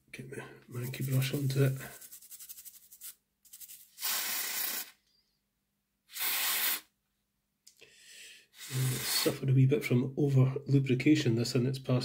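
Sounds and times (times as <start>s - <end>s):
small brush scrubbing: 0.7s - 4.9s
aerosol spray bursts: 3.6s - 5.0s, 6.1s - 6.9s.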